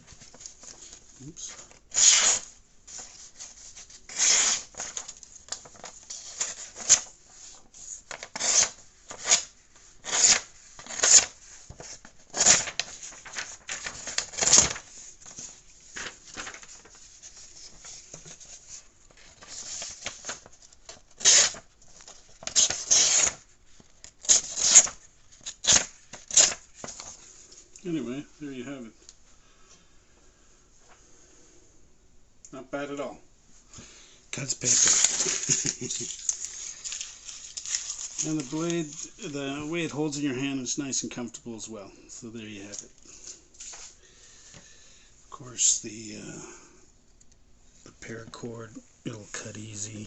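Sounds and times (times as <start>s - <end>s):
knife blade slicing paper: 4.1s - 4.8s, 8.2s - 11.4s.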